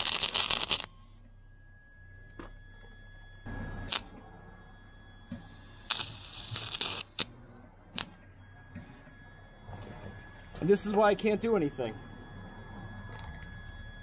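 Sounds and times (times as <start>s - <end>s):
crackling welding arc: 0.0s - 0.9s, 3.8s - 4.1s, 5.8s - 7.3s, 8.0s - 8.2s
welder arc pops and clicks: 0.0s - 0.9s, 3.9s - 4.1s, 5.3s - 8.9s.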